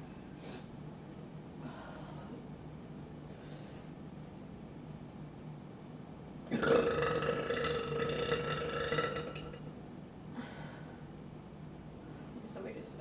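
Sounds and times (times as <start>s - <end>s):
woman burping: 6.5s - 9.6s.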